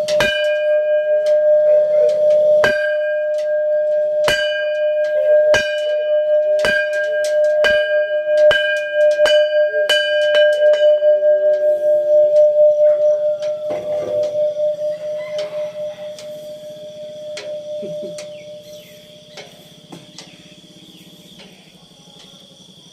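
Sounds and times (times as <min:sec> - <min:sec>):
bell struck and ringing: 0:00.0 - 0:20.7.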